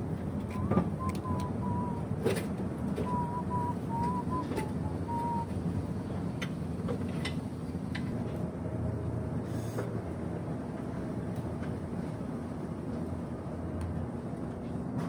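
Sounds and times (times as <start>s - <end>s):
faint engine ticks: 0.0s - 8.2s
diesel engine idling: 0.0s - 9.4s.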